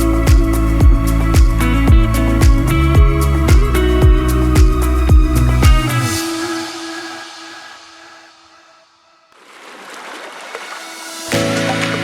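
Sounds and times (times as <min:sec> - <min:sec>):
background music: 0:00.0 - 0:08.2, 0:11.0 - 0:12.0
reverse cymbal hiss: 0:00.0 - 0:09.2.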